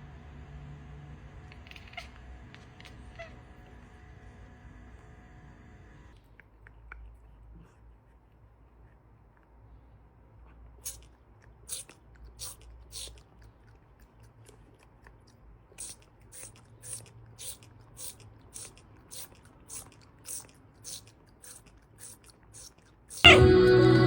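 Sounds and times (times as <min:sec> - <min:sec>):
cat chewing crunchy food: 0:06.1 - 0:09.6, 0:10.4 - 0:23.4.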